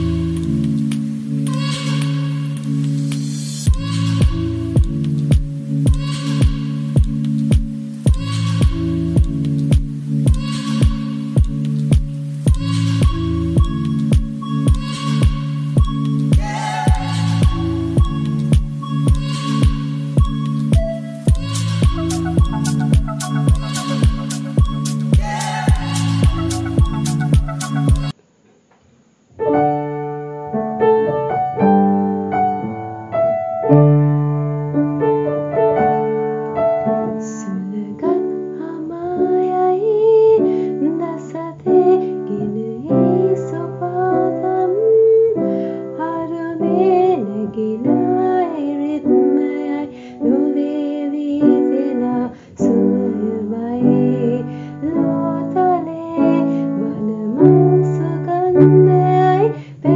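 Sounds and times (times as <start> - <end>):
piano song: 0.0 - 28.2, 29.4 - 59.9
woman singing: 1.4 - 5.0, 5.8 - 7.3, 8.0 - 9.5, 10.2 - 28.2, 37.0 - 59.9.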